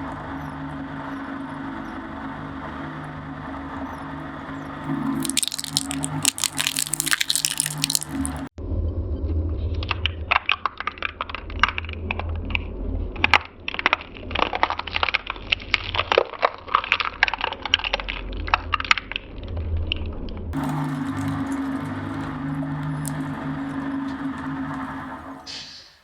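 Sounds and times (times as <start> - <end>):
blades cracking plastic: 5.2 - 8.5
shredder humming: 20.6 - 25.5.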